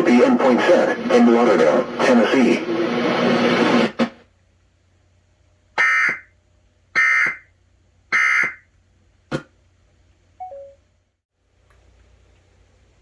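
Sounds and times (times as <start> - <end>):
click: 11.6 - 11.8.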